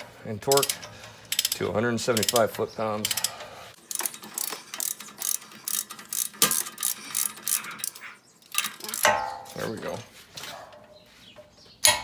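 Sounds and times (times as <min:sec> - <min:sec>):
ratchet wrench clicking: 0:00.4 - 0:07.8.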